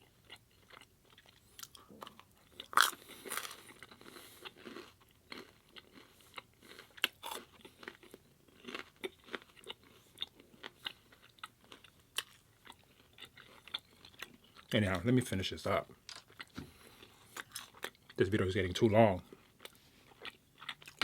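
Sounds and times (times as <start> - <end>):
chewing with wet mouth clicks: 0.2 - 14.7, 19.3 - 21.0.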